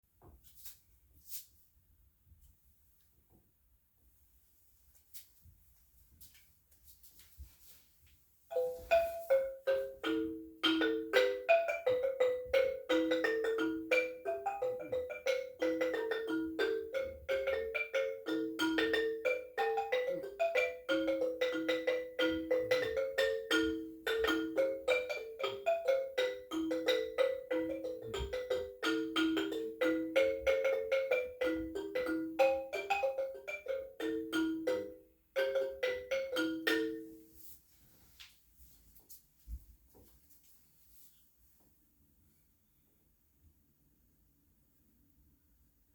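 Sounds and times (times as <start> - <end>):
trough xylophone playing: 8.5 - 37.3.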